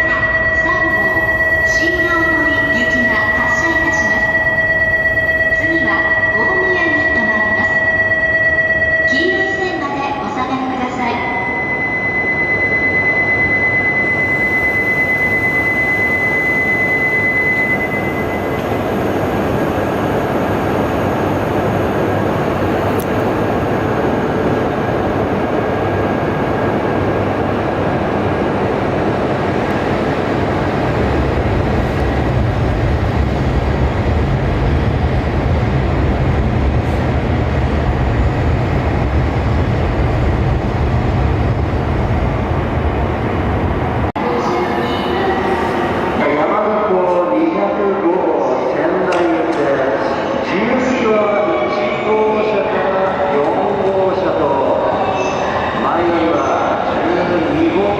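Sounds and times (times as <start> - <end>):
steady high tone: 0.0 - 48.8
deep rumble: 18.7 - 44.2
train wheels and air rushing: 22.1 - 47.4.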